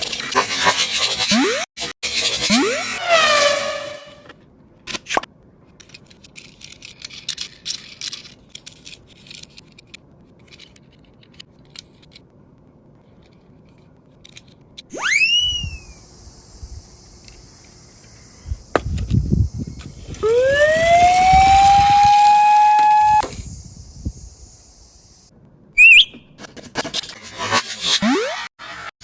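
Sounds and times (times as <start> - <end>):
rising whistle-like glides: 2.5 - 4.3, 14.9 - 26.2
siren wailing: 2.5 - 4.3, 14.9 - 16.0, 20.0 - 23.5
short high warble: 14.9 - 16.2.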